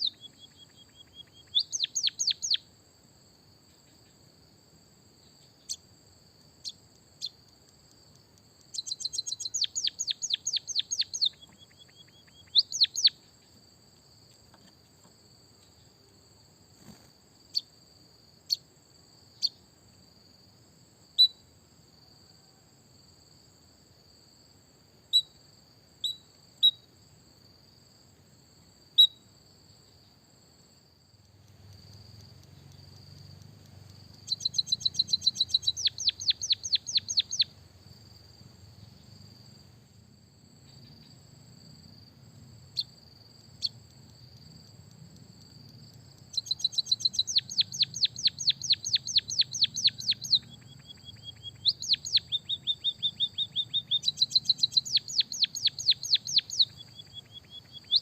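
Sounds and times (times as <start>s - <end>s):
songbird trilling: 0.0s - 2.7s, 8.6s - 13.3s, 31.8s - 37.6s, 46.2s - 58.0s
faint high-pitched whine: 0.0s - 58.0s.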